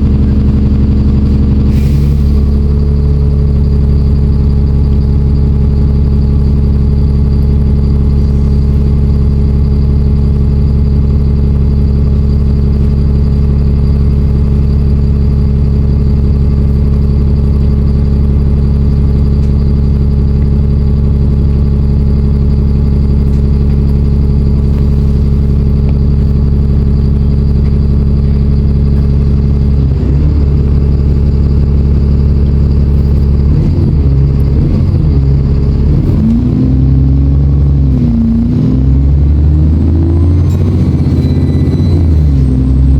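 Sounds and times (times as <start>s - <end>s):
bus diesel engine idling: 0.0s - 42.9s.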